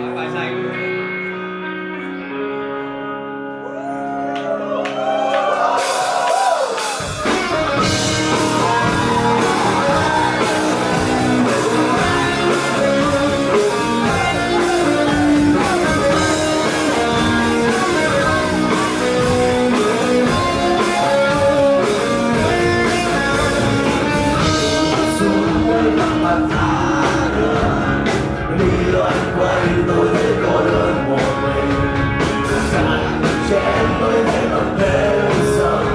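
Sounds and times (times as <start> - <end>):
electric guitars: 0.0 - 35.9
drum kit: 5.5 - 35.9.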